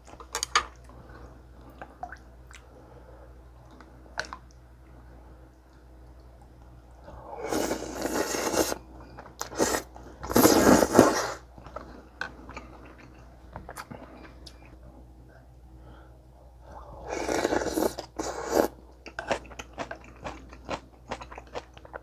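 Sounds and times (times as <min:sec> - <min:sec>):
chewing and crunching: 0:17.2 - 0:22.0.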